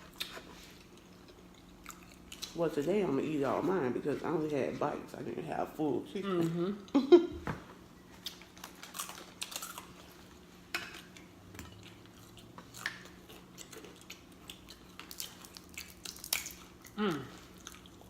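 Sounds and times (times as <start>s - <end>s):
chewing and smacking: 0.0s - 2.6s, 8.1s - 18.0s.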